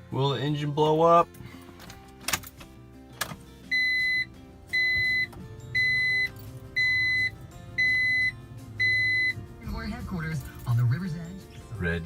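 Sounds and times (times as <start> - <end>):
car warning chime beeping: 3.6 - 9.5.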